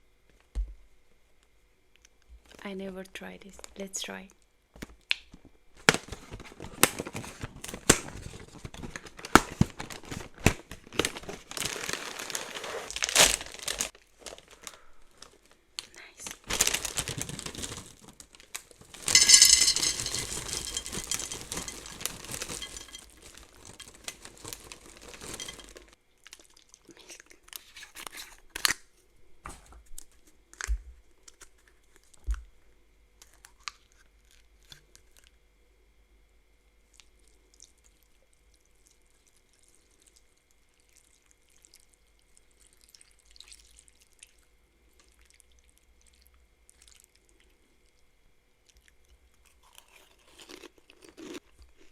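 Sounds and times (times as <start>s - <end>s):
cereal packaging rustling: 5.8s - 26.4s, 49.6s - 51.9s.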